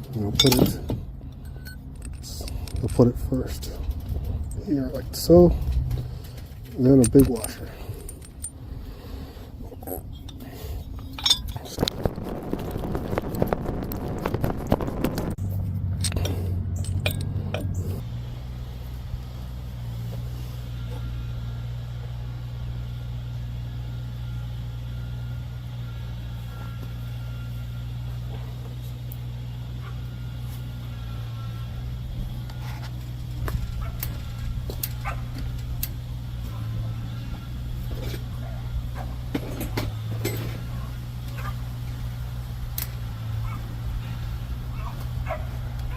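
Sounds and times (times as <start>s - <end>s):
metal tools clinking: 0.0s - 8.7s, 9.7s - 11.9s, 15.5s - 18.0s, 31.3s - 42.0s
low machine hum: 0.0s - 45.9s.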